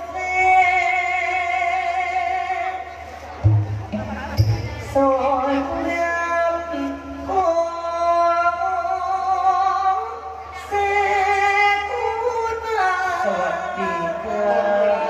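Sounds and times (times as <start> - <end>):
person singing long held notes: 4.9 - 15.0.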